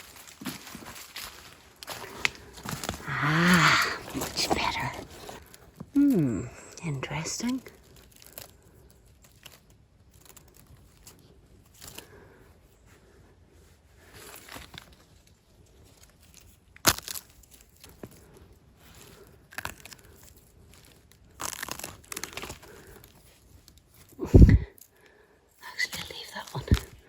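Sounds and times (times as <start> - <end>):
leaves and twigs rustling: 0.0 - 27.0
twig snapping: 1.8 - 3.2.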